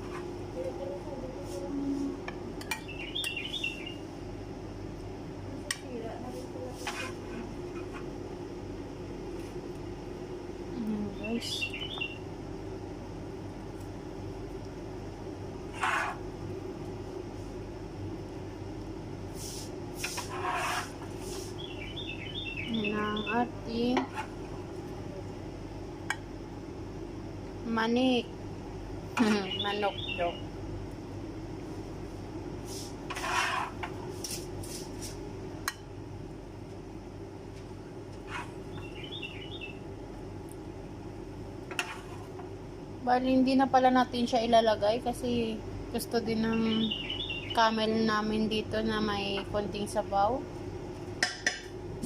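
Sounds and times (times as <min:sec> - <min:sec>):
low mechanical hum: 0:00.0 - 0:52.0
high chirps: 0:02.8 - 0:04.0.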